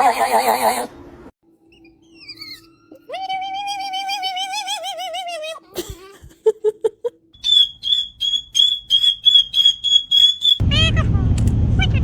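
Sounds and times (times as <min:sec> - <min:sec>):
parrot whistling and chirping: 0:01.7 - 0:04.2, 0:07.4 - 0:10.6.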